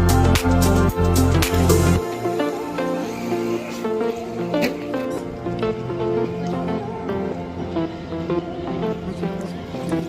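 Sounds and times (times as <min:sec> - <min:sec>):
heavy bass line with beat: 0:00.0 - 0:02.2
light melody: 0:00.0 - 0:10.0.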